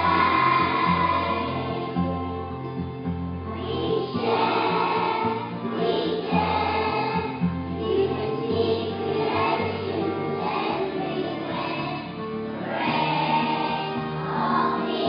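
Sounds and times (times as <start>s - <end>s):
children singing together: 0.0s - 2.2s, 3.5s - 15.0s
recorded musical accompaniment: 0.0s - 15.0s.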